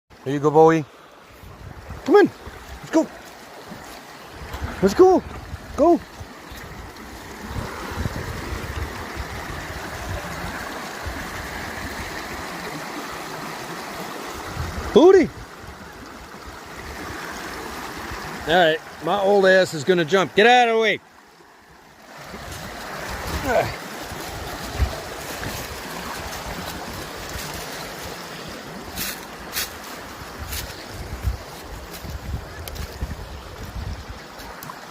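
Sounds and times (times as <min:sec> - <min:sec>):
creek water running: 0:00.1 - 0:34.9
wind rumble on microphone: 0:01.4 - 0:02.8, 0:04.4 - 0:12.1, 0:14.4 - 0:17.2, 0:22.3 - 0:28.0, 0:28.8 - 0:34.6.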